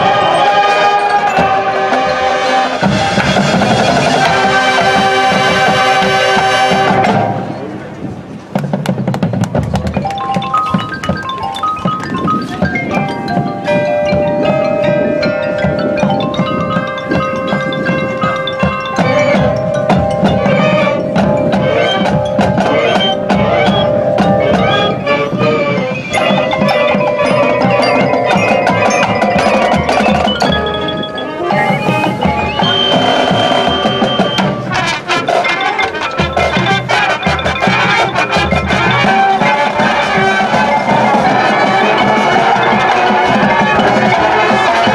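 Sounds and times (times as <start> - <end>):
mallet percussion: 0.0 - 7.8, 8.6 - 44.9
drums: 0.0 - 44.9
marching band playing: 0.0 - 44.9
long held notes: 13.2 - 44.9.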